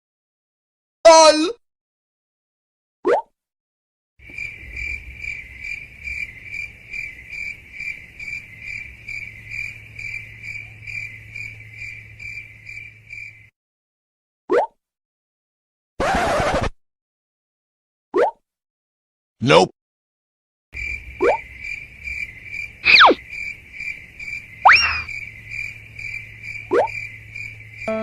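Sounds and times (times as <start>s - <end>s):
crickets chirping: 4.2s - 13.5s, 20.8s - 28.0s.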